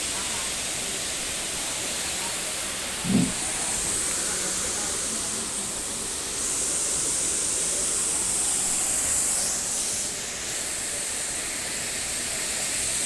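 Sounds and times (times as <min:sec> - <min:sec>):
heavy rain pouring: 0:02.8 - 0:04.5.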